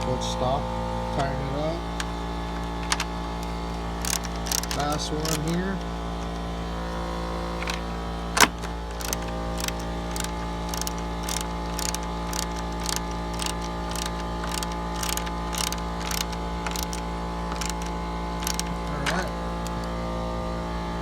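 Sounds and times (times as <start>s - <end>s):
steady hum: 0.0s - 21.0s
ratchet wrench clicking: 1.9s - 6.5s, 7.5s - 20.0s.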